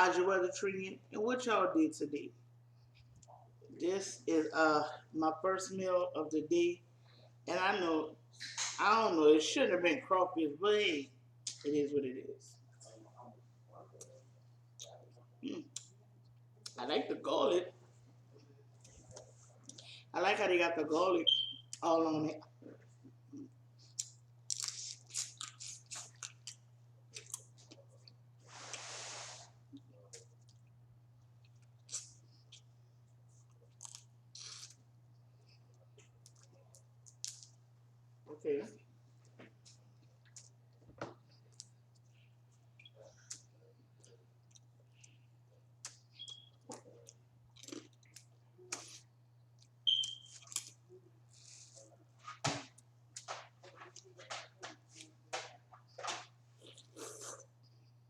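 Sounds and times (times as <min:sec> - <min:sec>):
steady low hum: 0:00.0 - 0:58.0.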